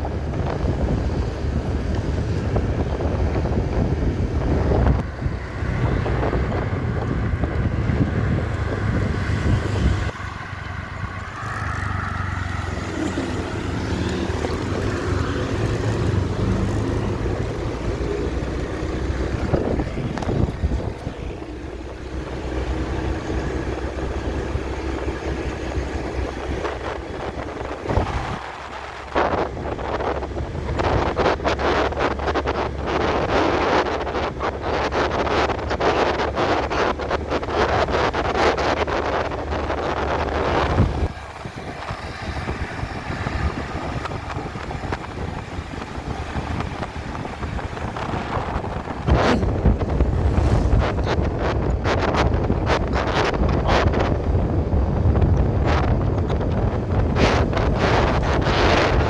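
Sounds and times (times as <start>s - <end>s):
motor scooter engine: 0.0s - 31.0s
street traffic: 0.0s - 59.0s
wind buffeting microphone: 0.0s - 59.0s.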